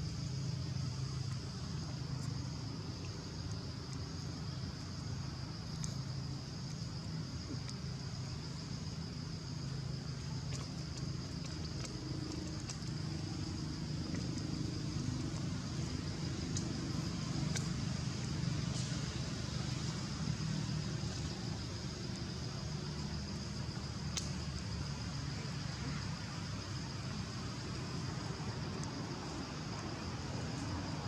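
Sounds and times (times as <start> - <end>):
distant road traffic rumble: 0.0 - 31.0
faint clicks: 24.1 - 24.4.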